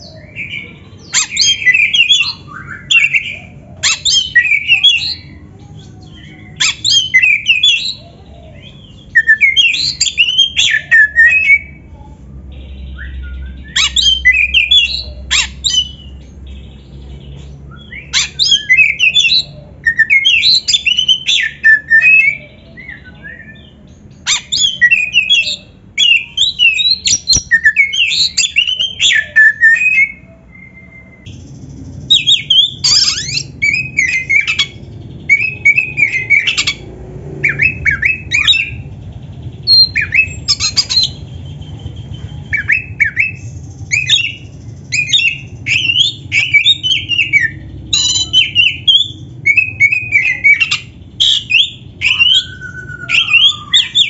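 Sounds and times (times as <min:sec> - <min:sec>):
bird singing whistles: 0:09.1 - 0:16.2, 0:24.3 - 0:36.8, 0:37.4 - 0:38.9, 0:39.6 - 0:54.0
bird chattering: 0:31.3 - 0:54.0.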